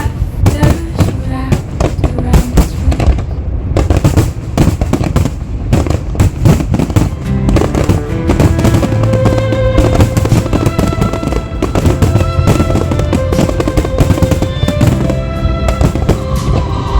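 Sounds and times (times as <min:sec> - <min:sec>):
fireworks bangs and crackles: 0:00.0 - 0:16.9
music playing: 0:06.8 - 0:16.9.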